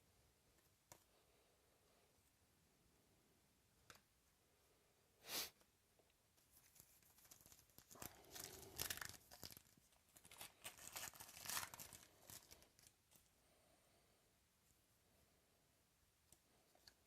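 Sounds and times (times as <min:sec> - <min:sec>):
wrapper tearing and crinkling: 0:06.6 - 0:12.9.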